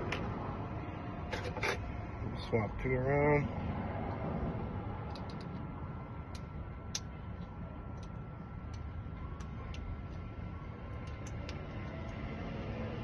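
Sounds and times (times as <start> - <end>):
steady background hum: 0.0 - 13.0
clicks of small lock parts: 5.0 - 5.6, 6.3 - 10.3, 10.9 - 12.3.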